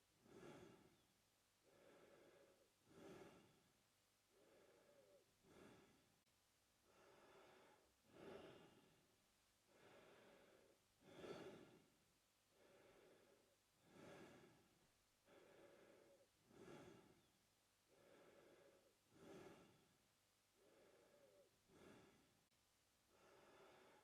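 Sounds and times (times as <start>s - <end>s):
man breathing through mouth: 0.2s - 1.0s, 1.7s - 3.7s, 4.3s - 6.0s, 6.9s - 8.9s, 9.7s - 11.8s, 12.6s - 14.6s, 15.2s - 17.3s, 17.9s - 19.8s, 20.6s - 22.3s.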